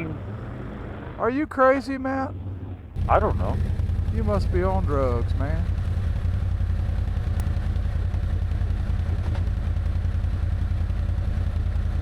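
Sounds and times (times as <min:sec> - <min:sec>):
atv engine idling: 0:03.0 - 0:12.0.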